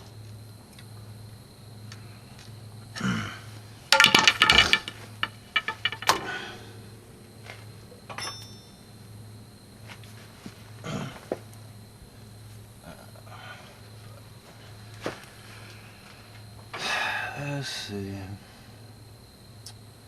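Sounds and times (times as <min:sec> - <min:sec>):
steady low hum: 0:00.0 - 0:20.0
metal tools clanking: 0:03.9 - 0:06.6, 0:08.1 - 0:08.9.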